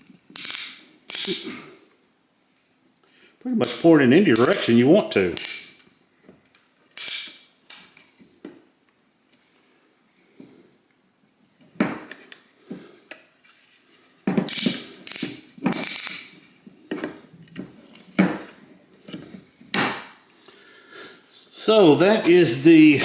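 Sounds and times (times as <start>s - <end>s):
rustling scrapes: 12.9s - 14.2s, 21.8s - 23.0s.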